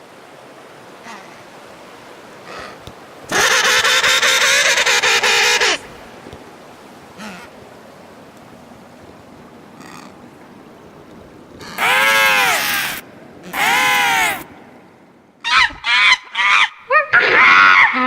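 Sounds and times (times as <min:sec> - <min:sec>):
animal calls rising and falling: 0:11.7 - 0:14.5
short sharp animal calls: 0:11.7 - 0:14.5.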